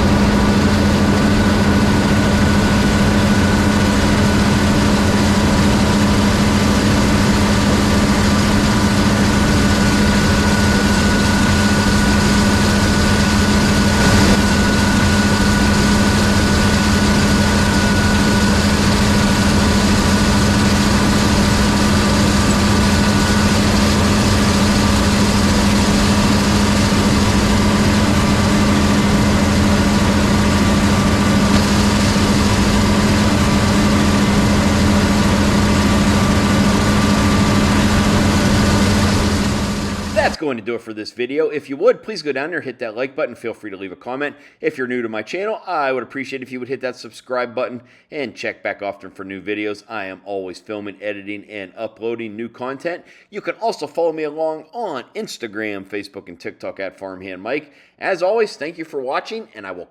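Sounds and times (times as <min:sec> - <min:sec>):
large engine humming: 0:00.0 - 0:40.4
thin high whine: 0:00.0 - 0:40.4.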